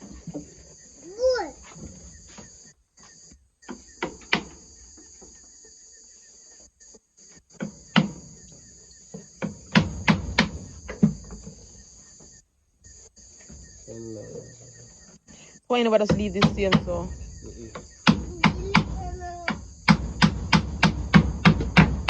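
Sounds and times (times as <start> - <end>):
insects chirring: 0.0 - 22.0
sharp knocks by hand: 3.7 - 4.6, 7.6 - 8.3, 9.1 - 11.6, 17.7 - 22.0.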